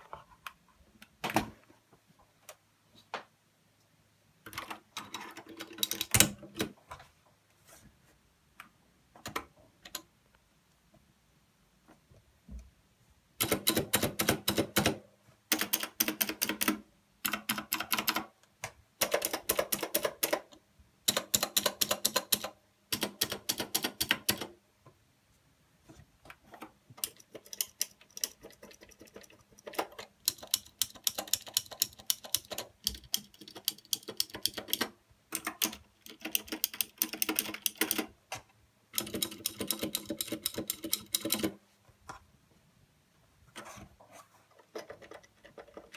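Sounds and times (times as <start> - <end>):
clicky keyboard typing: 4.4 - 6.8, 13.4 - 24.5, 26.6 - 38.4, 39.0 - 41.6.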